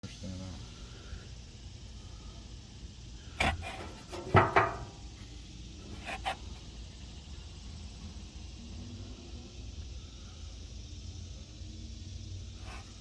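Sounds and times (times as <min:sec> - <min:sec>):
faint low hum: 0:00.0 - 0:13.0
sharp knocks and clatters: 0:03.4 - 0:05.1.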